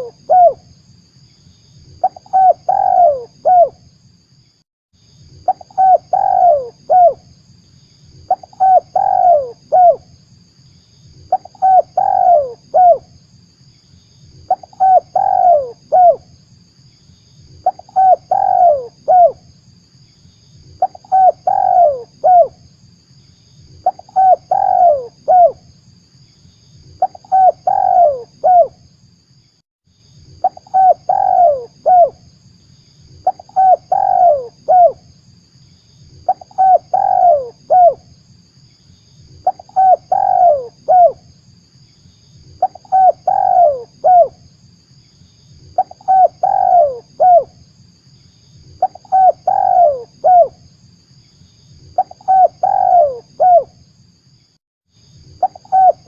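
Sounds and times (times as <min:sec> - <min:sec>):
dove cooing: 0:00.0 - 0:00.6, 0:02.0 - 0:03.8, 0:05.5 - 0:07.2, 0:08.3 - 0:10.0, 0:11.3 - 0:13.1, 0:14.5 - 0:16.2, 0:17.6 - 0:19.4, 0:20.8 - 0:22.5, 0:23.8 - 0:25.6, 0:27.0 - 0:28.7, 0:30.4 - 0:32.2, 0:33.2 - 0:35.0, 0:36.2 - 0:38.0, 0:39.4 - 0:41.2, 0:42.6 - 0:44.4, 0:45.8 - 0:47.5, 0:48.8 - 0:50.6, 0:52.0 - 0:53.7, 0:55.4 - 0:56.0.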